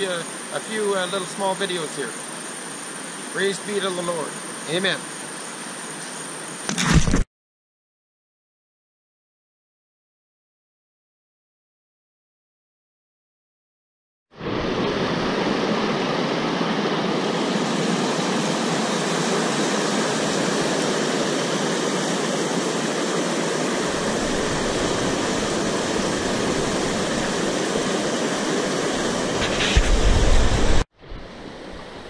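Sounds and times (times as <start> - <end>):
water rushing: 0.0 - 6.8, 14.4 - 32.0
wind on microphone: 14.4 - 32.0.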